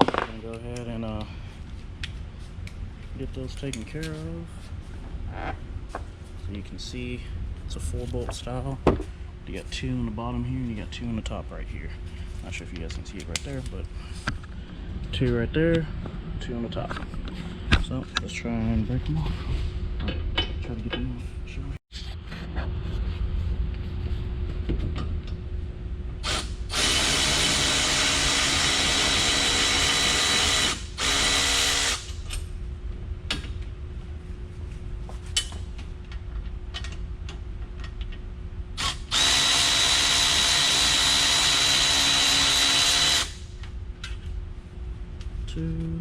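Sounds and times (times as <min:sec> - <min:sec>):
power tool whirring: 0:26.2 - 0:32.2, 0:38.8 - 0:43.4.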